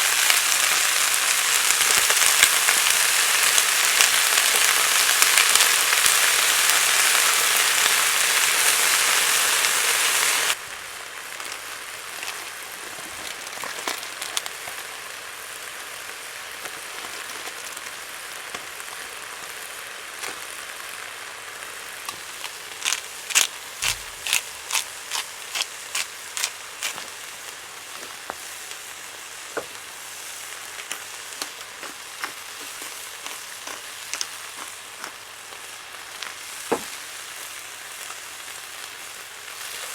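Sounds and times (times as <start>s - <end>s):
food sizzling in a pan: 0.0s - 39.9s
fire pops and crackles: 1.4s - 5.8s, 11.3s - 14.8s, 22.0s - 28.8s, 30.5s - 37.1s.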